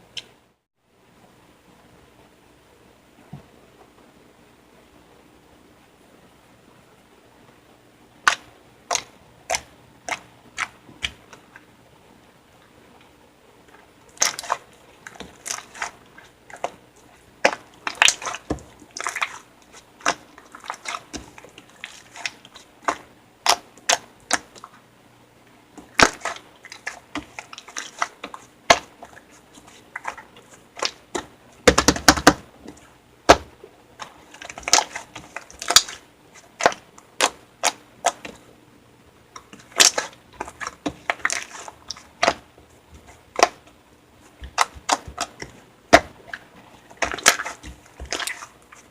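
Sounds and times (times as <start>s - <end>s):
slime crackling: 14.1s - 24.8s, 25.8s - 38.4s, 39.4s - 48.9s
slime clicking and popping: 34.4s - 36.0s, 39.4s - 42.4s.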